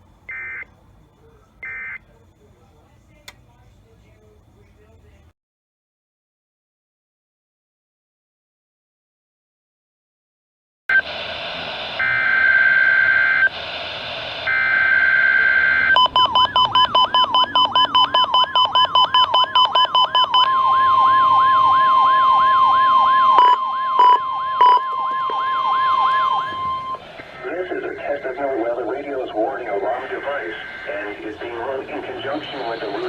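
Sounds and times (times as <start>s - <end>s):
steady alarm tone: 0.3s - 0.7s, 11.9s - 33.0s
siren-like pitch sweep: 12.0s - 13.5s, 14.4s - 27.0s.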